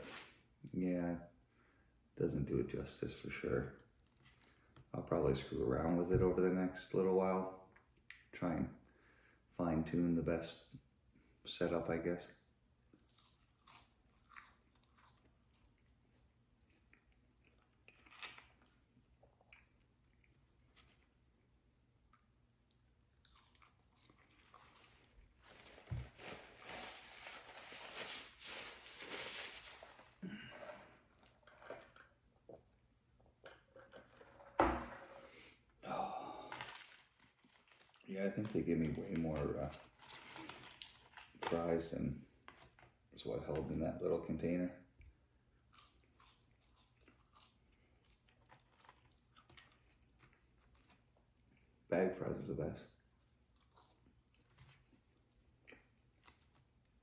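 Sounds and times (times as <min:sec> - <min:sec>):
person chewing and crunching: 0:12.9 - 0:21.1, 0:22.0 - 0:25.4, 0:45.5 - 0:51.8, 0:53.0 - 0:57.0.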